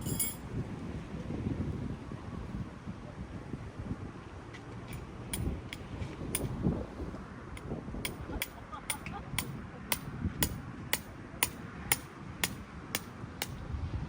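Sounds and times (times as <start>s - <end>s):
wind noise on microphone: 0.0s - 14.0s
hammer striking tent peg: 4.9s - 6.6s, 8.1s - 13.6s.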